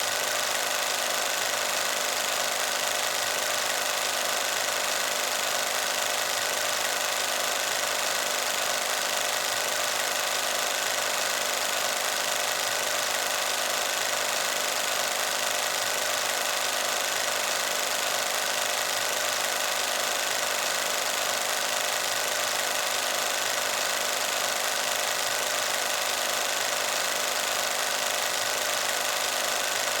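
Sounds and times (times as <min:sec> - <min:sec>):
film projector running: 0:00.0 - 0:30.0.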